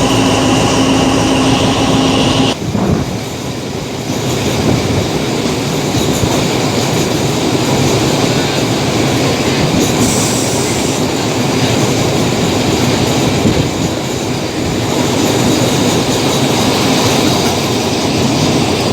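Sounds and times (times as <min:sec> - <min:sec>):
high-pitched wheel squeal: 0:00.0 - 0:02.6
train wheels rumbling on rails: 0:00.0 - 0:18.9.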